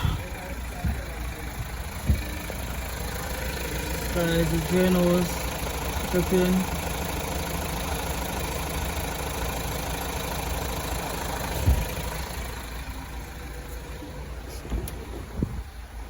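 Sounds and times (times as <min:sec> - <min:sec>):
car engine idling: 0:00.0 - 0:16.0
short low thump: 0:11.6 - 0:12.0.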